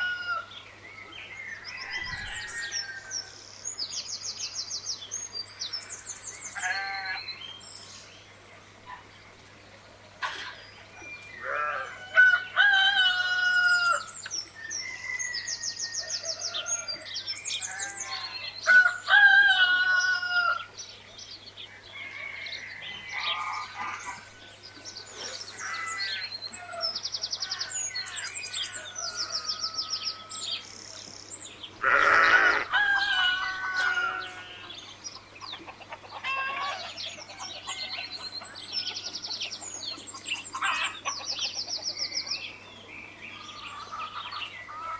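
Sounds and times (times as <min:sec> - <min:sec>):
roosters crowing: 0:00.0 - 0:00.6, 0:01.6 - 0:03.5, 0:06.5 - 0:07.3, 0:11.4 - 0:20.7, 0:21.7 - 0:30.8, 0:31.8 - 0:35.2, 0:35.8 - 0:39.5
small birds chirping: 0:20.8 - 0:44.9
chickens clucking: 0:31.9 - 0:42.6.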